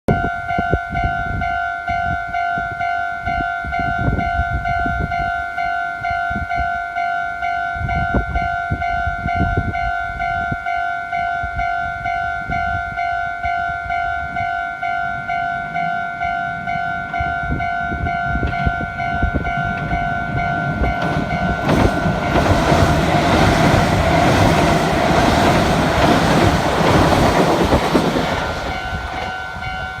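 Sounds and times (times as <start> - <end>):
level crossing alarm ringing: 0.1 - 30.0
electric train rushing past: 11.4 - 30.0.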